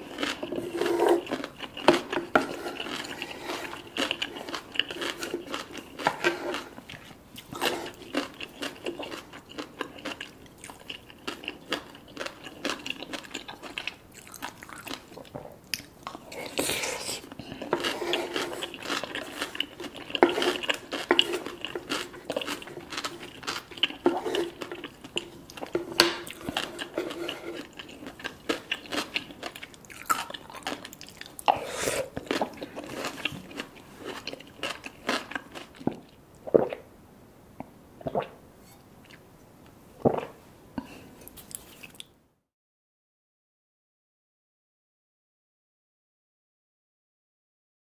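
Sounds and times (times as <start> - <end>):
crunchy food chewing: 0.0 - 36.2.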